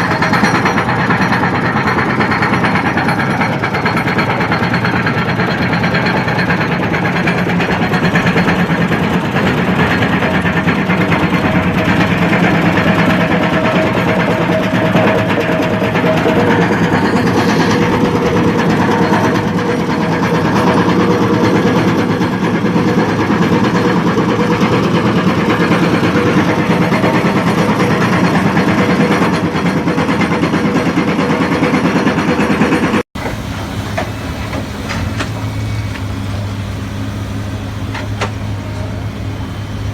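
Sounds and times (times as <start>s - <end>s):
heavy machine engine running: 0.0s - 30.6s, 33.2s - 39.9s
hydraulic crusher clattering: 33.2s - 39.9s.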